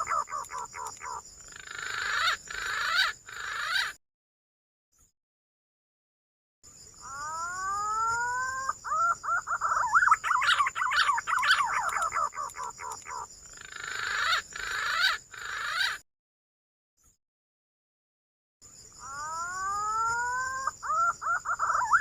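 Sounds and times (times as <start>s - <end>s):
pigeon calling: 0.0s - 3.9s.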